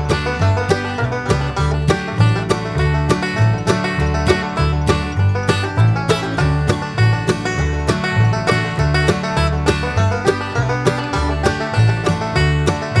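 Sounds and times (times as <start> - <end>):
bluegrass music with plucked notes: 0.0 - 13.0.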